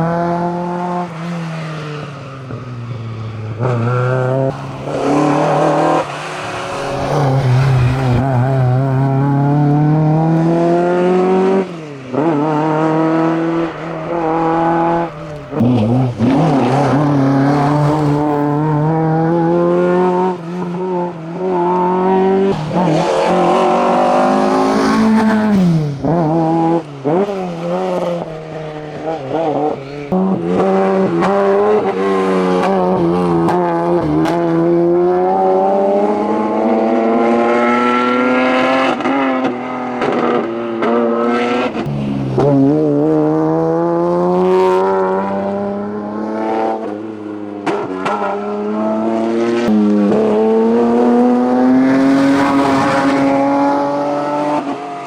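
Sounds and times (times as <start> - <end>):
race car engine accelerating: 0.0 - 55.0.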